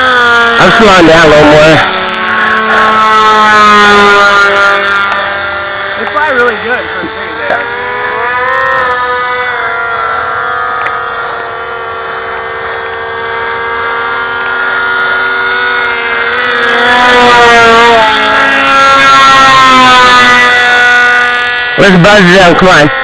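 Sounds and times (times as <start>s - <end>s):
lower motor tone: 0.0s - 23.0s
model plane motor whine: 0.0s - 23.0s.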